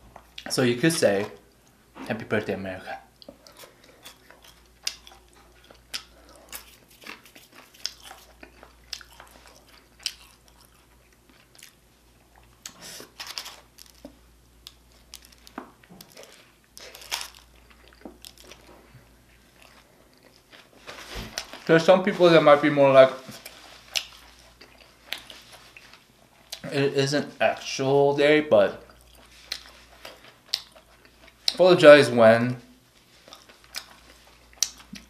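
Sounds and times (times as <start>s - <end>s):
person chewing and biting food: 3.1s - 21.7s, 23.3s - 26.7s, 28.8s - 31.6s, 32.9s - 35.0s.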